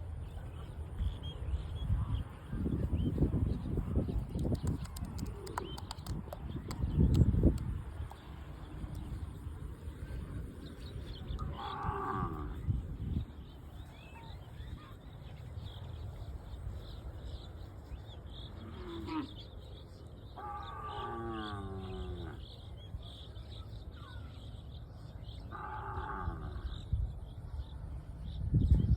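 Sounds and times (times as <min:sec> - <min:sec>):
cattle mooing: 0:11.5 - 0:12.7.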